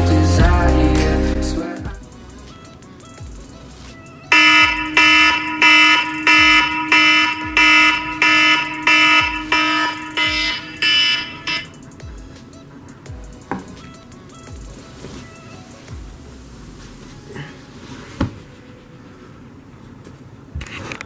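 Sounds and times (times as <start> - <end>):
electronic alarm beeping: 3.6 - 11.9.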